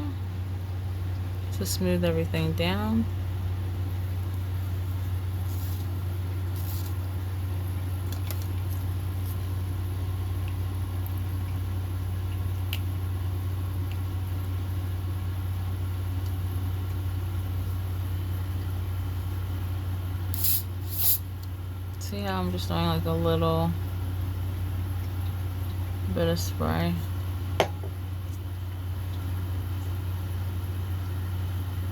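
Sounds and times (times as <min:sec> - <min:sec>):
comb strokes through hair: 0:05.4 - 0:07.0.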